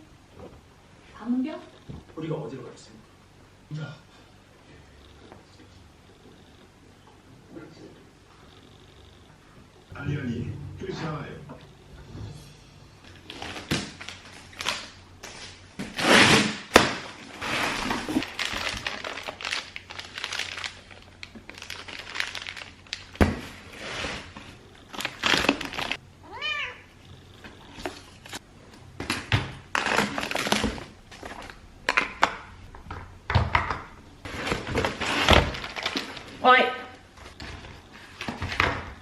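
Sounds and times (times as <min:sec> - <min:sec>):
cat meowing: 0:26.2 - 0:26.9.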